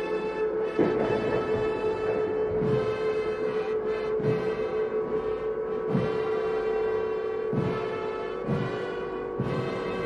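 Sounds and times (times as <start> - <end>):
deep low swell: 0.0 - 7.3
dark droning music: 0.0 - 10.0.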